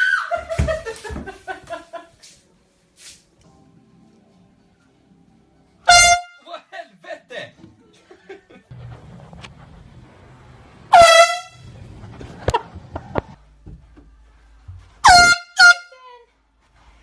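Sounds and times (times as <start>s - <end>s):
air horn blasts: 5.9s - 6.4s, 10.9s - 11.8s, 15.0s - 16.2s.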